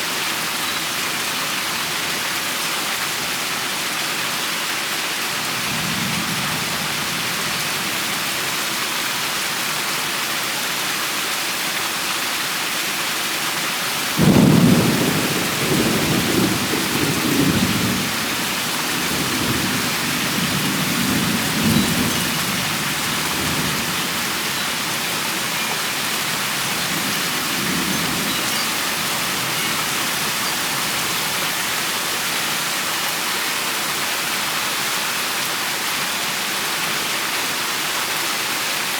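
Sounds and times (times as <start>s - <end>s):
steady rain falling: 0.0s - 38.9s
thunder clap and rumble: 14.2s - 24.4s.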